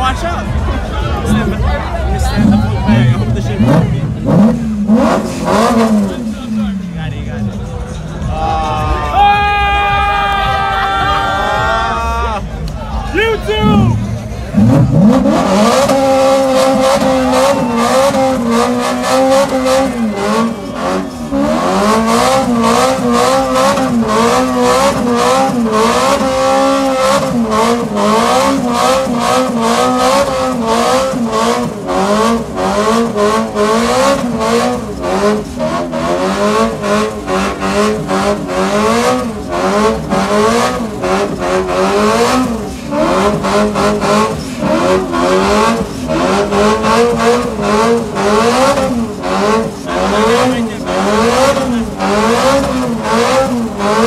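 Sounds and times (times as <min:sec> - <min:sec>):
car engine at high revs: 0:00.0 - 0:08.9, 0:10.4 - 0:54.0.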